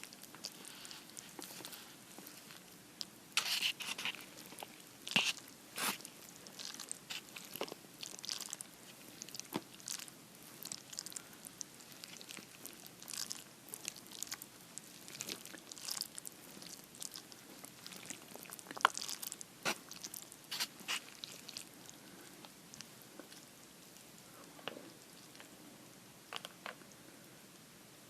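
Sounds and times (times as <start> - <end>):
wet chewing: 0.0 - 23.5.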